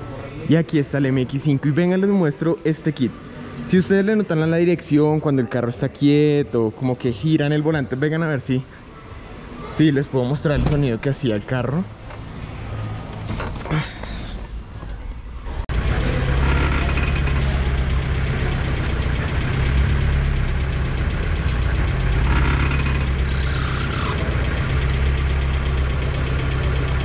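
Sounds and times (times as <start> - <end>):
car engine idling: 14.3 - 27.0
crunching creak from steering: 15.8 - 18.2, 22.0 - 24.4.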